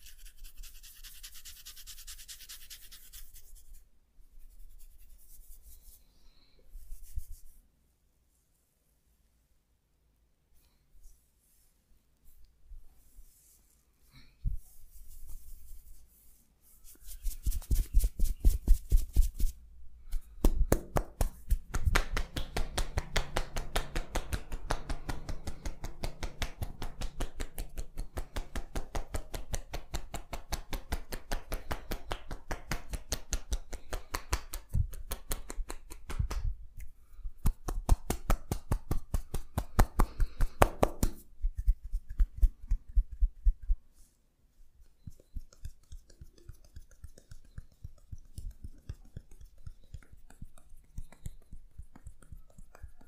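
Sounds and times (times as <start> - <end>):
hands slapping a body: 17.2 - 43.8, 45.0 - 53.0.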